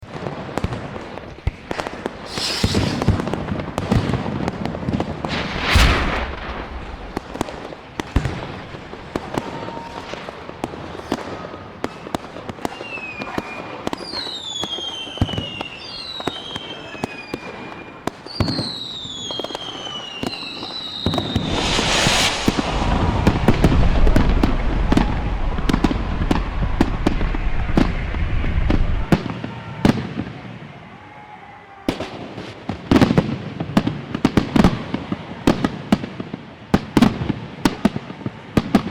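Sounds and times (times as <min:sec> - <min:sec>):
fireworks crackling: 0:00.0 - 0:30.5
fireworks bangs: 0:00.0 - 0:30.7
rockets hissing up: 0:01.3 - 0:09.3, 0:20.5 - 0:29.3
falling whistles: 0:02.2 - 0:03.4, 0:12.7 - 0:29.0
booms rumbling: 0:05.1 - 0:09.1, 0:21.1 - 0:29.3.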